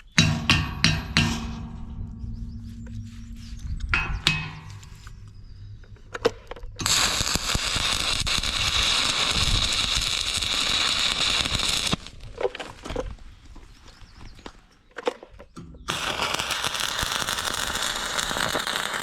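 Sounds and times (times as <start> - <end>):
sharp knocks: 0.0 - 5.3
arc welding sizzle: 6.8 - 12.4, 15.9 - 19.0.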